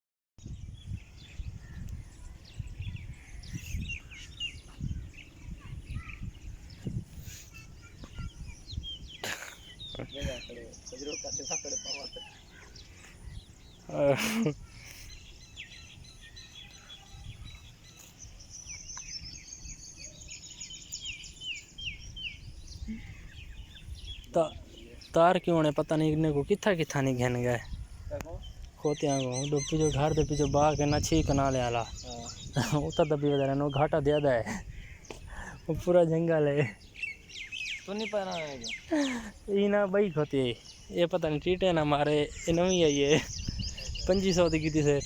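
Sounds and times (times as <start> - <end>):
wind on microphone: 0.4 - 10.9, 14.5 - 25.1, 27.5 - 35.9, 41.4 - 45.0
small birds chirping: 0.4 - 45.0
low outdoor background noise: 0.7 - 45.0.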